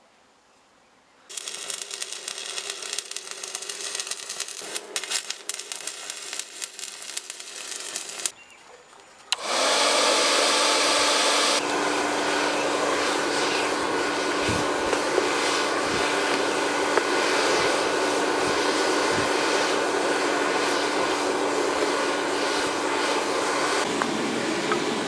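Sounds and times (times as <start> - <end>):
power tool scratchy grinding: 1.3 - 8.3
power tool steady whirring: 1.3 - 8.3, 9.4 - 23.4.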